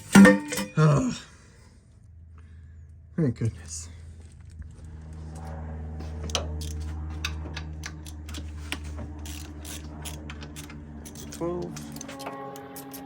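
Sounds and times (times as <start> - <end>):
steady low hum: 0.0 - 13.0
metallic clinks of hand tools: 9.3 - 13.0.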